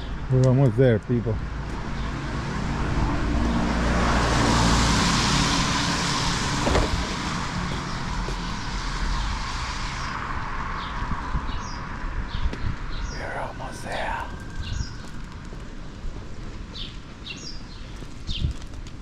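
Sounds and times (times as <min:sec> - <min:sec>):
car driving past: 0:02.0 - 0:11.0.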